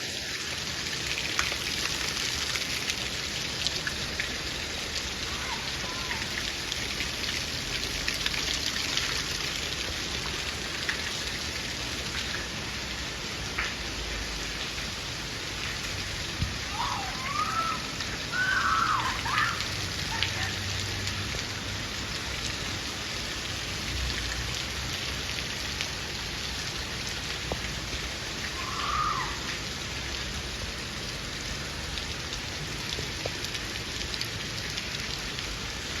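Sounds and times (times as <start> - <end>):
steady rain hiss: 0.0 - 36.0
swooping calls: 16.7 - 20.6.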